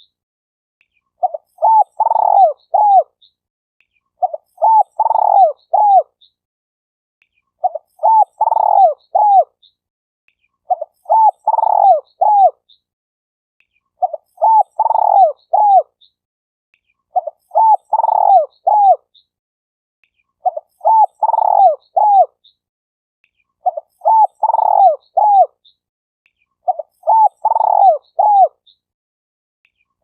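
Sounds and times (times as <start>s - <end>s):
dove cooing: 1.2s - 3.1s, 4.2s - 6.1s, 7.6s - 9.5s, 10.7s - 12.6s, 14.0s - 15.9s, 17.2s - 19.0s, 20.4s - 22.3s, 23.6s - 25.5s, 26.7s - 28.6s.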